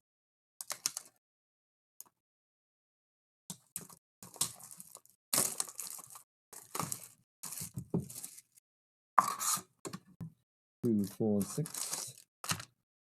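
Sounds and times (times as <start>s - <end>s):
plastic wrapping crinkling and tearing: 4.2s - 8.6s, 10.9s - 12.6s.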